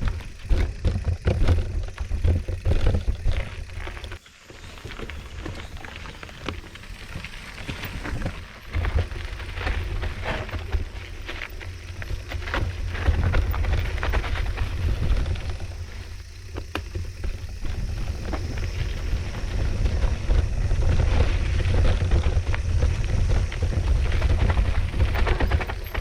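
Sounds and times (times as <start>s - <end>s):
bike rattling: 0.0s - 26.0s
tyres crunching over dirt: 0.0s - 26.0s
wind buffeting microphone: 17.0s - 26.0s.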